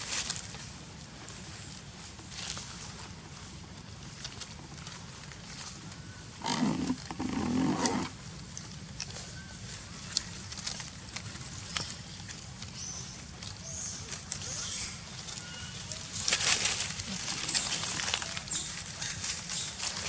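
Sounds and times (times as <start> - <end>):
animal low rough calls: 6.3 - 8.2.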